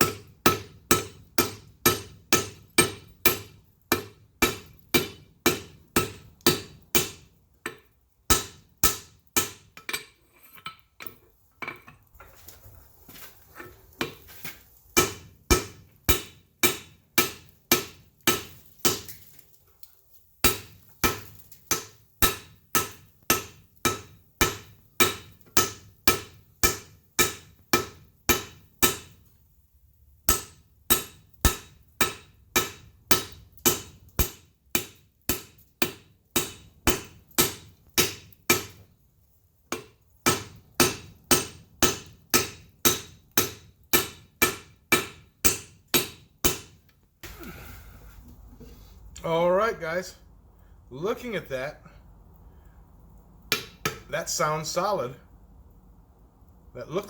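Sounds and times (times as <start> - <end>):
hammer striking iron on anvil: 0.0 - 12.0, 15.0 - 19.1, 20.4 - 29.2, 30.3 - 38.8, 39.7 - 46.8, 53.5 - 54.1.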